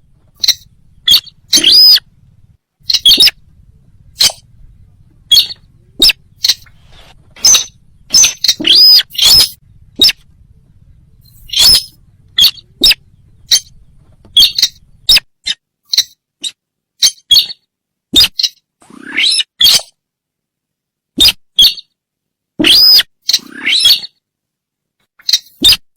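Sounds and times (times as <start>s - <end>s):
short squeaky bird calls: 0.0s - 20.0s, 21.2s - 21.9s, 22.6s - 24.2s, 25.2s - 25.9s.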